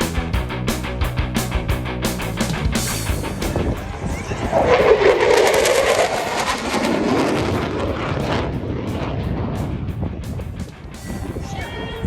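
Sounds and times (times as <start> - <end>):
jet fighter flying past: 3.4 - 11.4.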